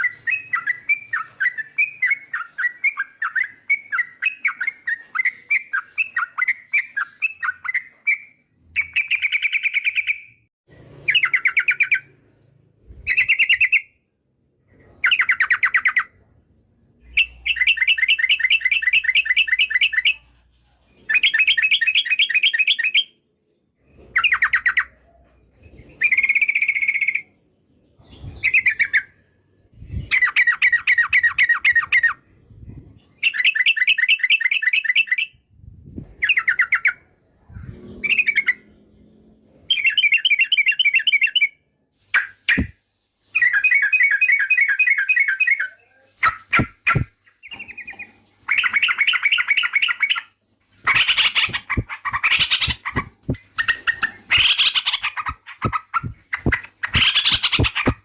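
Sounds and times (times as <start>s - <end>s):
bird chattering phrases: 44.8s - 58.0s.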